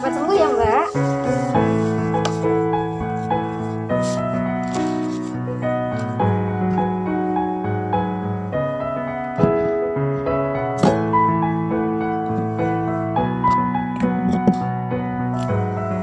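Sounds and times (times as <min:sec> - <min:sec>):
slow solo piano: 0:00.0 - 0:16.0.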